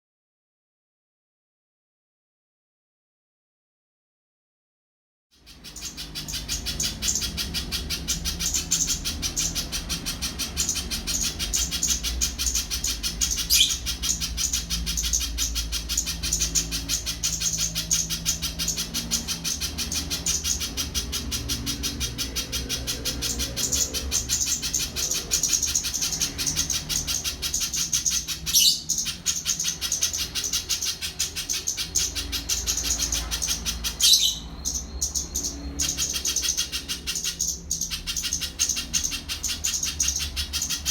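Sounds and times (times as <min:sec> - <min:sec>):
bird rapid high chirping: 0:05.4 - 0:40.9.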